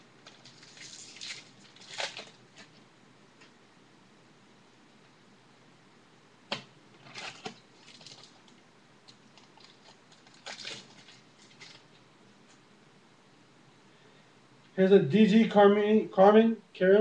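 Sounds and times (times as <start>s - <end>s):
card packaging clicks and rustles: 0.2s - 2.8s, 7.0s - 12.0s.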